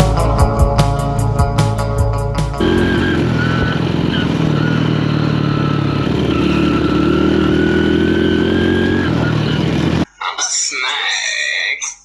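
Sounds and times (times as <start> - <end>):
music: 0.0 - 3.2
motorcycle engine running: 0.0 - 10.1.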